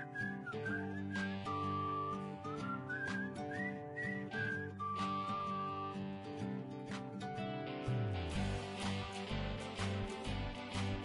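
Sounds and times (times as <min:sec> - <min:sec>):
high whistled note: 0:00.0 - 0:05.9
acoustic guitar strumming chords: 0:00.0 - 0:11.0.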